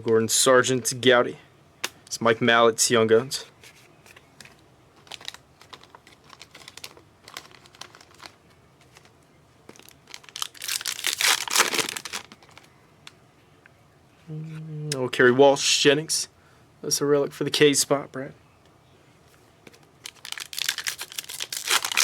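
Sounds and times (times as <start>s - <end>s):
cards clicking and crinkling: 4.0s - 12.7s, 19.6s - 22.0s
foil pack ripping open: 5.0s - 9.1s, 9.8s - 12.7s, 20.0s - 22.0s.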